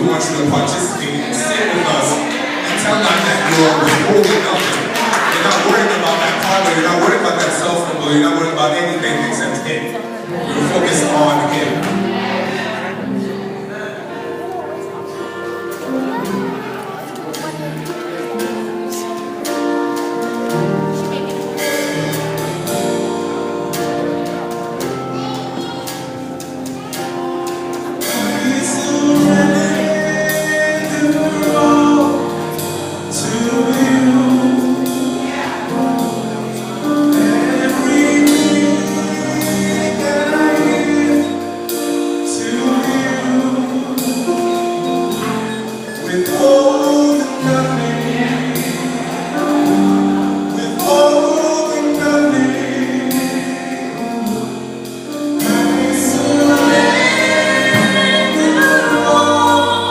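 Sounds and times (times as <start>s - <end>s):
sustained instrumental chords: 0.0s - 59.9s
group vocals singing: 10.2s - 14.3s, 27.8s - 41.5s, 42.2s - 54.6s, 55.4s - 59.9s.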